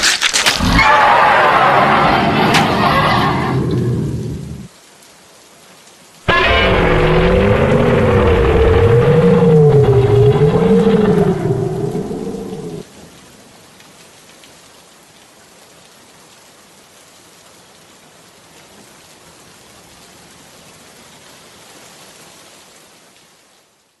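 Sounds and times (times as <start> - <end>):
steady rain-like hiss: 0.6 - 24.0
loud wavering drone: 6.3 - 12.8.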